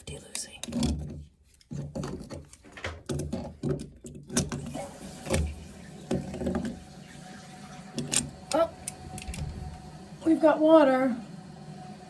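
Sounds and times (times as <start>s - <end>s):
toilet fill valve hissing: 4.6s - 12.0s.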